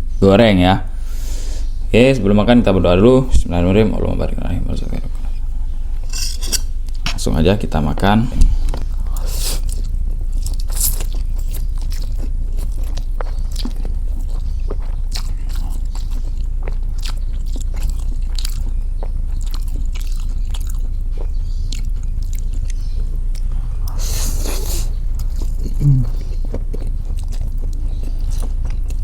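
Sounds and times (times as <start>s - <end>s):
steady low hum: 0.0s - 29.0s
chewing and biting noodles: 8.8s - 29.0s.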